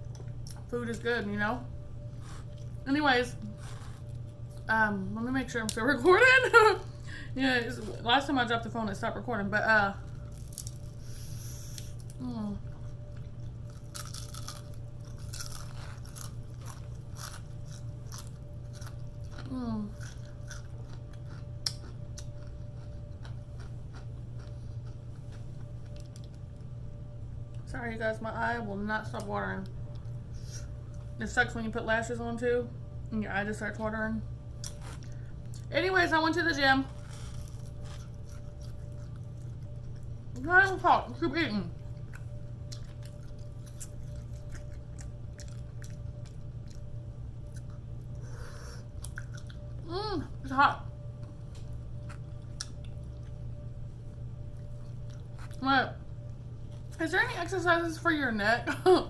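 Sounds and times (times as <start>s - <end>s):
steady low hum: 0.0s - 59.0s
person chewing food: 12.7s - 26.4s, 36.9s - 40.1s, 41.8s - 49.8s, 51.3s - 53.5s, 54.1s - 55.6s
person eating clicks and smacks: 20.5s - 24.5s.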